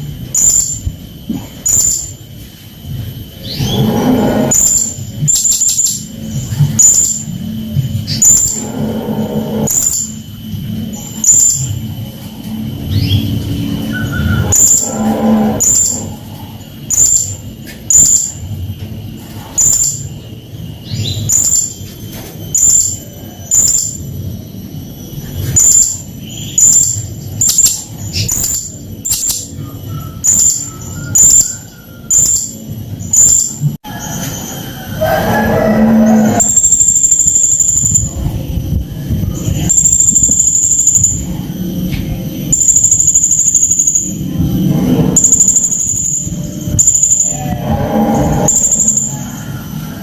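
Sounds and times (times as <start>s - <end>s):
faint high whine: 0.0s - 50.0s.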